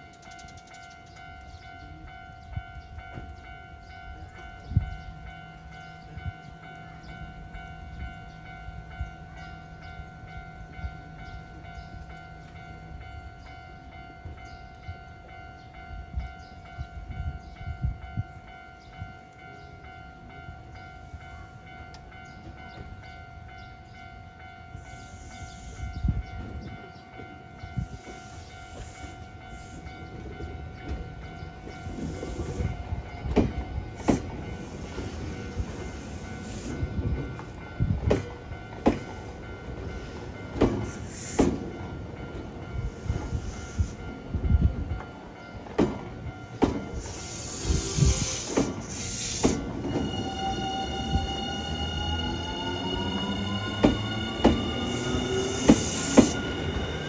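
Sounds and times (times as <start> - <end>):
train rail noise: 0.0 - 57.0
level crossing alarm tone: 46.9 - 57.0
high hiss: 47.0 - 49.7.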